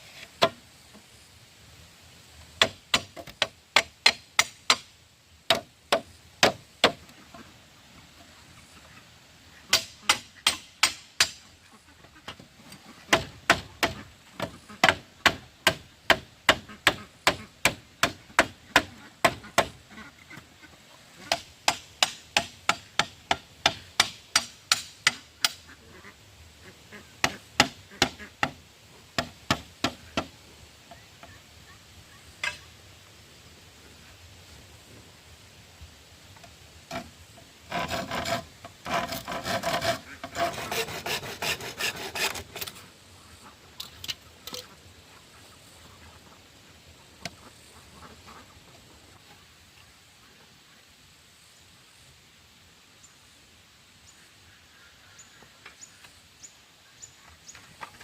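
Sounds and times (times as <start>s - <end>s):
tool striking wood: 2.6s - 4.9s, 5.5s - 7.0s, 9.7s - 11.4s, 13.1s - 19.7s, 21.3s - 25.6s, 27.2s - 28.6s.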